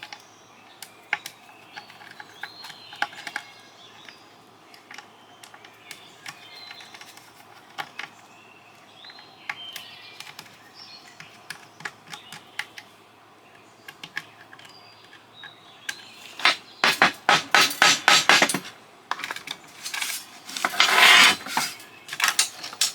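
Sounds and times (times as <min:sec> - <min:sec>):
loud sharp strikes: 0:16.4 - 0:18.7
clicks of small parts handled: 0:18.4 - 0:22.9.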